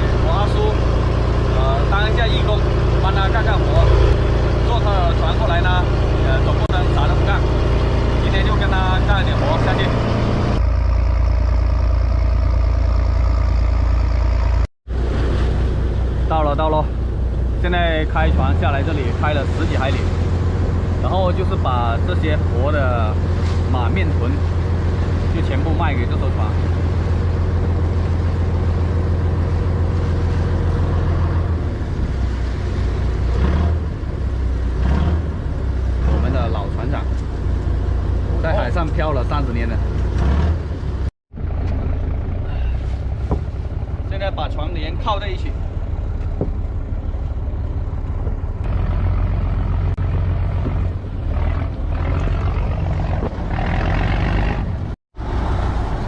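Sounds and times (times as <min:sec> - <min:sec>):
water wash: 0:00.0 - 0:11.3, 0:14.4 - 0:41.0, 0:55.2 - 0:56.0
boat engine humming: 0:00.0 - 0:56.0.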